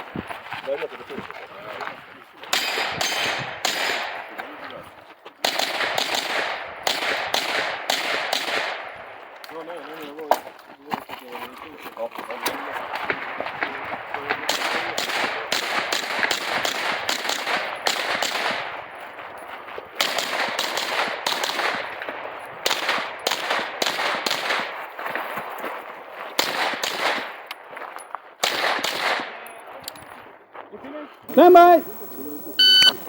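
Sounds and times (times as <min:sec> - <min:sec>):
rapid gunshots: 0:02.5 - 0:04.4, 0:05.4 - 0:09.2, 0:12.6 - 0:18.9, 0:20.0 - 0:24.8, 0:26.4 - 0:27.4, 0:28.4 - 0:29.4.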